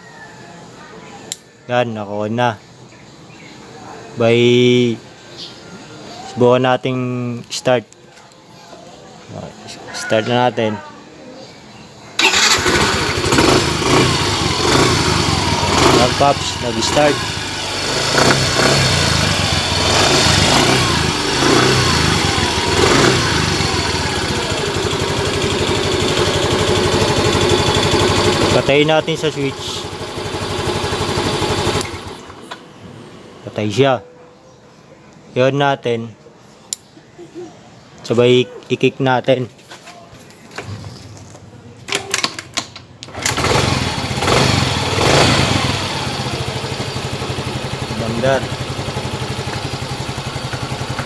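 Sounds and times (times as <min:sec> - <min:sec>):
motorcycle engine revving and idling: 0:12.2 - 0:32.5, 0:43.1 - 0:51.0.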